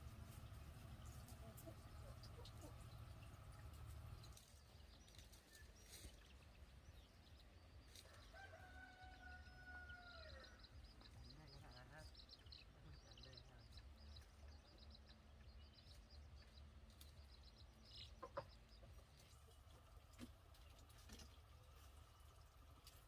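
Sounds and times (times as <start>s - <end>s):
low quiet rumble: 0.0s - 8.3s
faint bird chirping: 0.0s - 23.0s.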